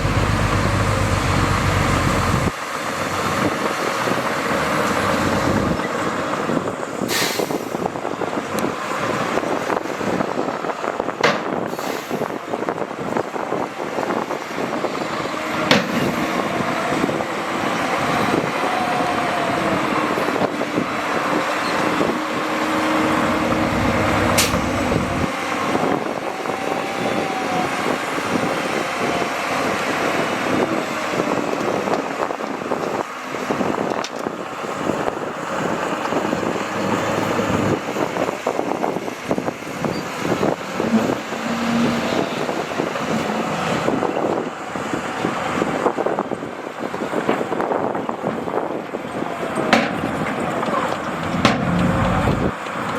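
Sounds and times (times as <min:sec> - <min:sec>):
deep low rumble: 0:00.0 - 0:02.5, 0:23.0 - 0:25.3, 0:51.0 - 0:52.5
heavy machinery diesel engines: 0:00.0 - 0:52.9.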